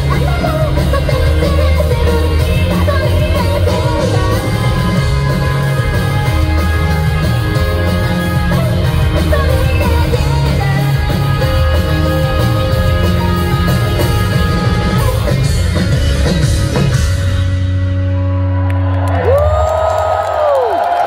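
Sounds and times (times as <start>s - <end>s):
woman singing lead: 0.0s - 16.3s
electric guitars: 0.0s - 20.2s
bass guitar: 0.0s - 20.6s
drums: 0.0s - 21.0s.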